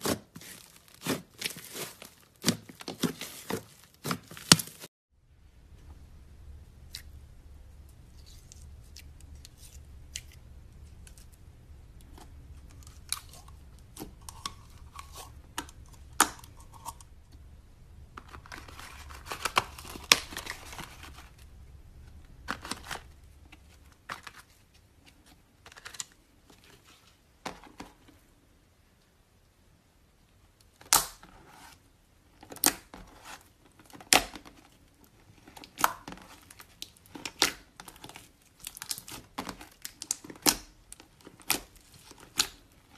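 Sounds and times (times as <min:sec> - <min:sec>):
faint low hum: 0:05.2 - 0:30.7.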